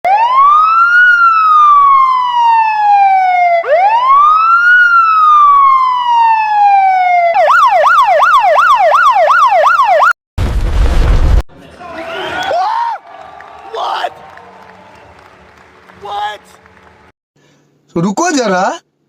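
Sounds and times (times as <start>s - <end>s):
ambulance siren wailing and yelping: 0.1s - 10.2s.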